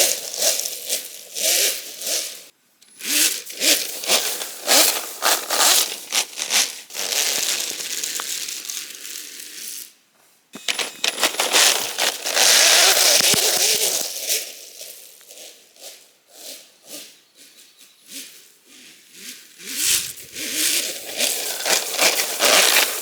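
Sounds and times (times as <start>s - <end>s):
track scraping and churning snow: 3.4s - 9.8s, 10.6s - 15.3s, 18.8s - 23.0s.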